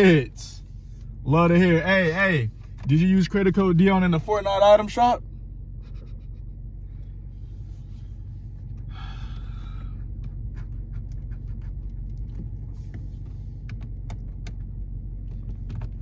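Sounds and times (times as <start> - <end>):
low rumble: 0.0 - 16.0.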